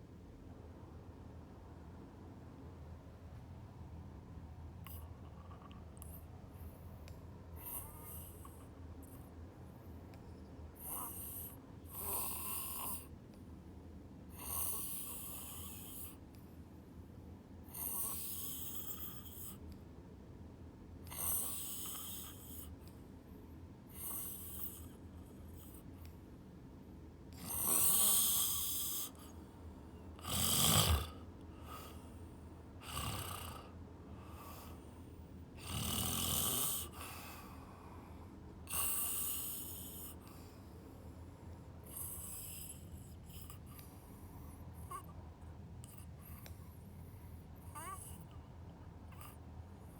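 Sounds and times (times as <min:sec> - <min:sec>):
snoring with low rattle: 0:10.8 - 0:13.2, 0:14.3 - 0:16.2, 0:17.6 - 0:19.6, 0:21.0 - 0:22.8, 0:23.9 - 0:25.8, 0:27.3 - 0:29.4, 0:30.2 - 0:32.2, 0:32.8 - 0:35.0, 0:35.6 - 0:37.6, 0:38.6 - 0:40.5, 0:41.8 - 0:45.1, 0:45.8 - 0:48.4.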